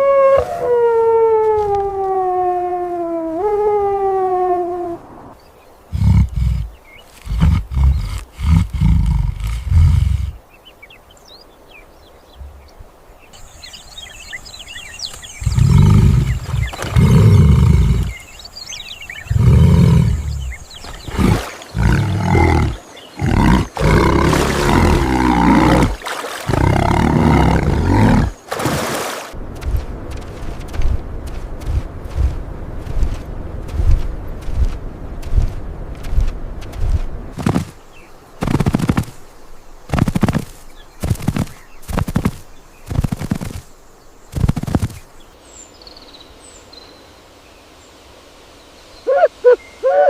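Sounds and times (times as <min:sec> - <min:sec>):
big cat roaring and growling: 0:15.4 - 0:18.2, 0:19.3 - 0:28.4.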